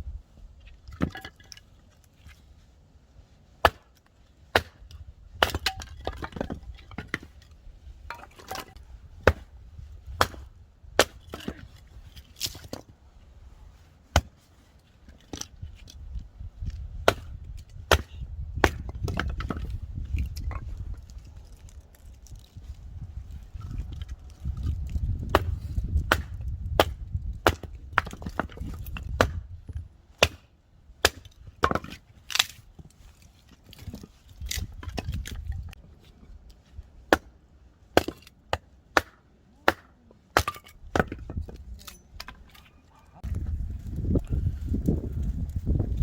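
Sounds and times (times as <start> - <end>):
axe chopping firewood: 0.9 - 1.5, 3.6 - 7.4, 8.0 - 12.9, 14.1 - 14.4, 16.6 - 21.0, 23.6 - 32.9, 37.1 - 42.6.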